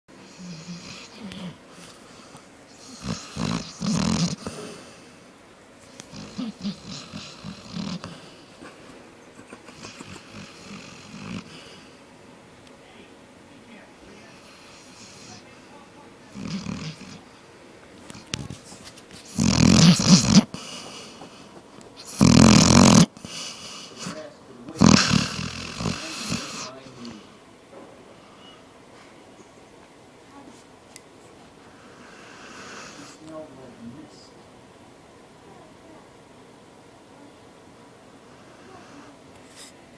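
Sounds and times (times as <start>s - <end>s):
dog snoring: 0.2s - 5.2s, 5.9s - 8.8s, 9.4s - 12.0s, 14.2s - 15.4s, 16.3s - 17.2s, 19.3s - 27.4s, 31.7s - 33.3s.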